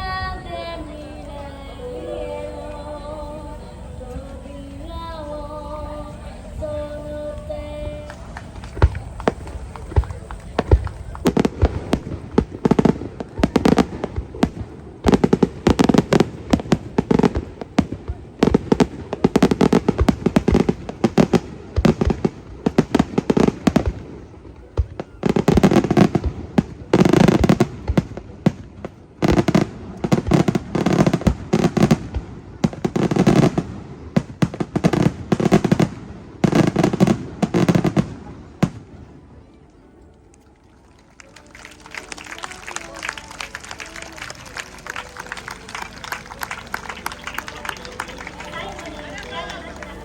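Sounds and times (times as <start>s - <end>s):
fireworks bangs and crackle: 8.0s - 39.4s.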